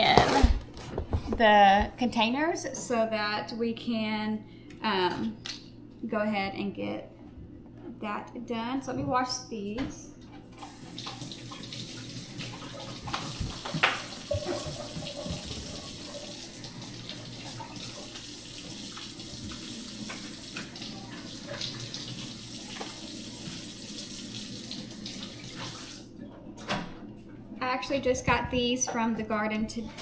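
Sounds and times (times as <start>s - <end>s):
kitchen tap running: 10.6s - 26.1s.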